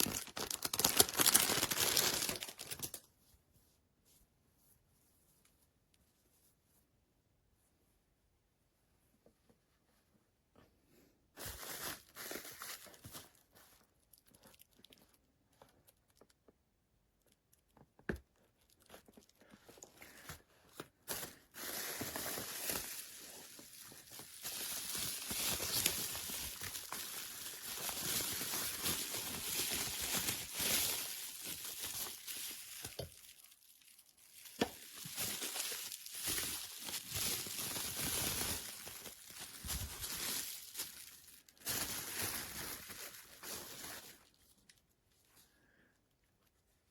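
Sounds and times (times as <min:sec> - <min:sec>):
packaging crinkling and rustling: 0:00.0 - 0:03.1, 0:11.4 - 0:45.0.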